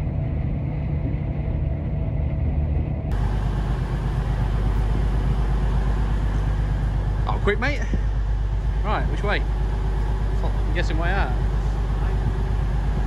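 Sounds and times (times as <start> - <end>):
train rumble inside carriage: 0.0 - 13.0.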